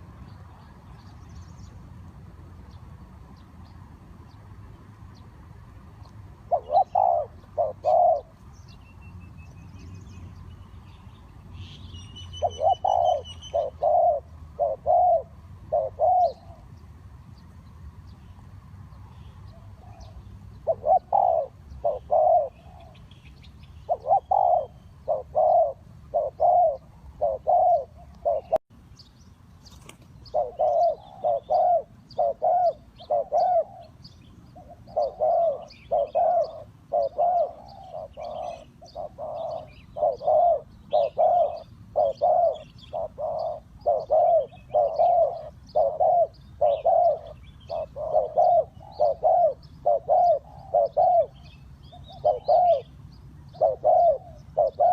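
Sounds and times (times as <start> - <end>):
small birds chirping faintly: 0.0 - 54.9
dove cooing: 6.4 - 8.4, 12.3 - 16.8, 19.4 - 23.0, 23.8 - 28.6, 30.2 - 54.9.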